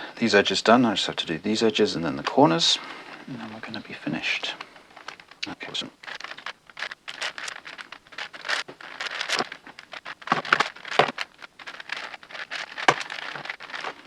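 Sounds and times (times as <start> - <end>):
puzzle cube layers clicking: 5.8 - 14.0.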